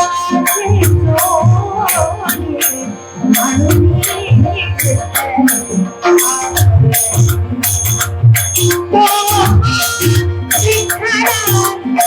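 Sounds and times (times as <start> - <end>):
hand cymbals struck rhythmically: 0.0 - 12.0
wavering melody: 0.0 - 12.0
drum: 3.3 - 12.0.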